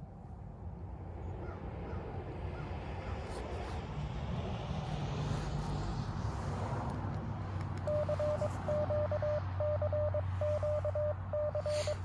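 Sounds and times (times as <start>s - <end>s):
faint bird calls: 10.2s - 12.0s.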